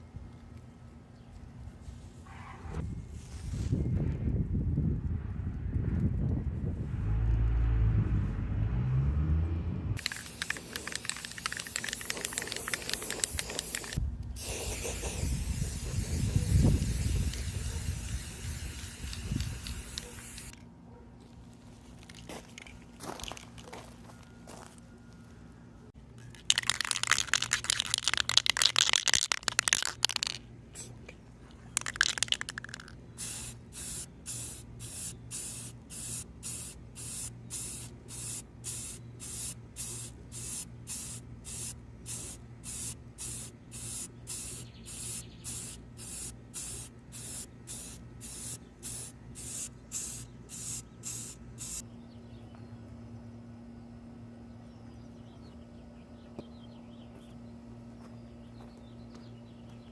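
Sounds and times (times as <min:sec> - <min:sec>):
steady low hum: 0:29.4 - 0:59.9.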